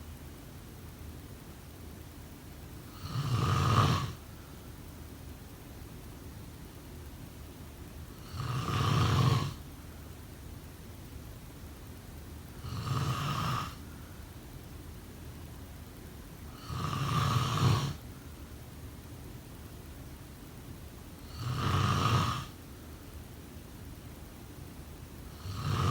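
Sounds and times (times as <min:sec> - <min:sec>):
person snoring: 0:02.9 - 0:04.2, 0:08.2 - 0:09.6, 0:12.6 - 0:13.8, 0:16.6 - 0:18.0, 0:21.2 - 0:22.6, 0:25.4 - 0:25.9
quiet breathing: 0:03.8 - 0:05.0, 0:12.5 - 0:14.8.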